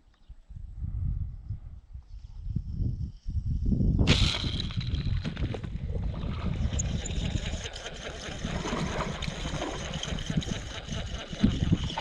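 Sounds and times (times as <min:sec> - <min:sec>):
water splashing and lapping: 0:06.0 - 0:12.0.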